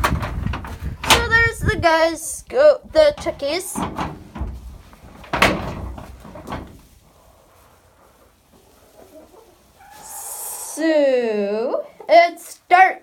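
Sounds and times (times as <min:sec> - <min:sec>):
coop door opening: 0:00.0 - 0:01.5, 0:02.9 - 0:06.8
door knocks: 0:03.2 - 0:06.8.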